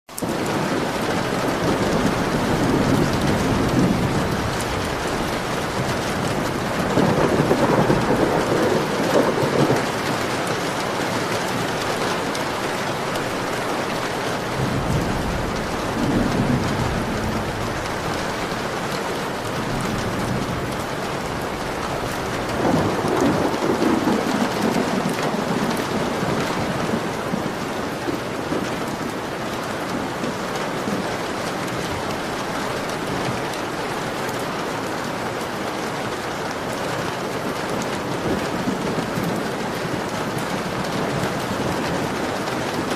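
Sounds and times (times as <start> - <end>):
heavy rain: 0.1 - 42.9
thunder rolling: 0.2 - 34.0.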